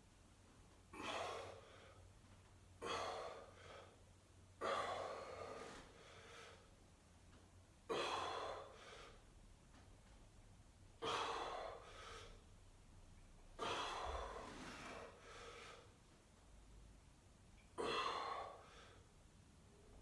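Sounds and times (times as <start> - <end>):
person breathing heavily: 0.9 - 2.1, 2.8 - 4.0, 4.6 - 6.8, 7.9 - 9.3, 11.0 - 12.5, 13.6 - 16.0.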